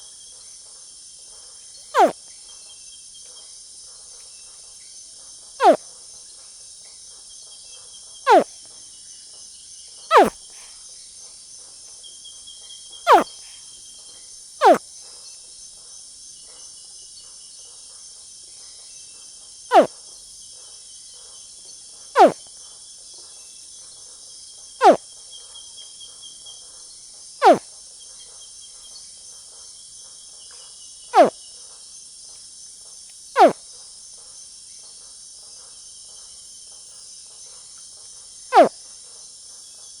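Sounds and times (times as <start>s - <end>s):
crickets chirping: 5.6s - 5.8s, 8.3s - 8.5s, 10.1s - 10.4s, 22.2s - 22.4s, 33.4s - 33.6s
young crocodile calls: 5.6s - 5.8s, 8.3s - 8.5s, 10.1s - 10.4s, 22.2s - 22.4s, 33.4s - 33.6s, 38.5s - 38.7s.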